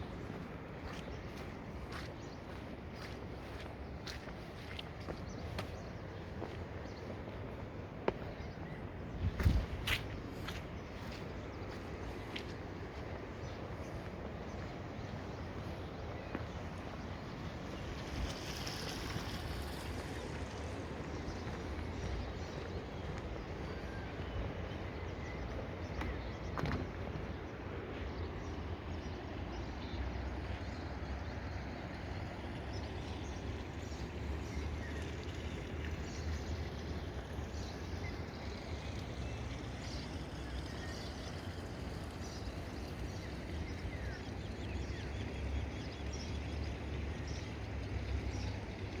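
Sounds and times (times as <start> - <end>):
small birds chirping: 0.0 - 27.4.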